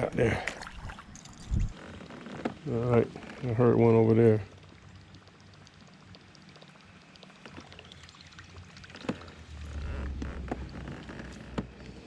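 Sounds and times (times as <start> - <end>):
low rumble: 9.3 - 12.0
kayak clicks and knocks: 10.0 - 12.0.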